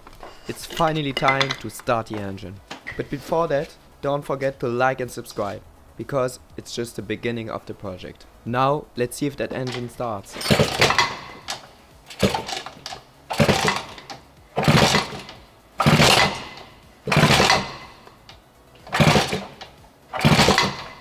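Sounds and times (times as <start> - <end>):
scooter engine being kick-started: 9.5 - 21.0.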